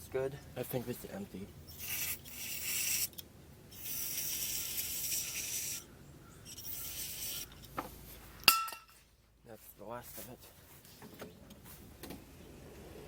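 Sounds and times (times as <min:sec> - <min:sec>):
squeeze bottle hissing and squirting: 0:01.7 - 0:05.9, 0:06.5 - 0:07.6.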